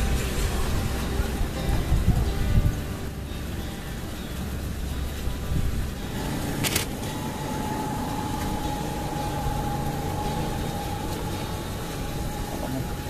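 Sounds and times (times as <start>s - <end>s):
steady hum: 0.0s - 13.0s
vehicle engine rumble: 0.0s - 13.0s
sharp click: 6.6s - 7.0s.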